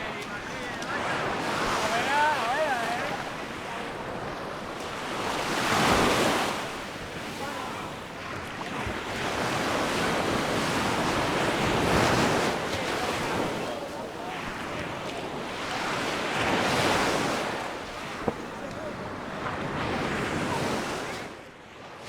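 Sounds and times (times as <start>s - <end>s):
sea waves breaking: 0.0s - 22.0s.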